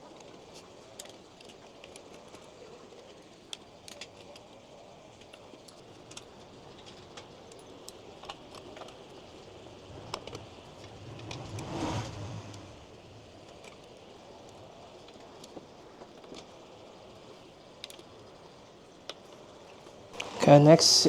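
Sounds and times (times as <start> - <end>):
vehicle passing by: 9.9 - 13.4.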